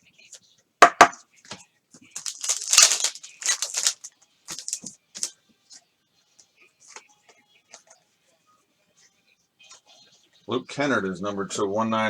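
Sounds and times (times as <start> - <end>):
foil wrapper crinkling and tearing: 2.2 - 5.3.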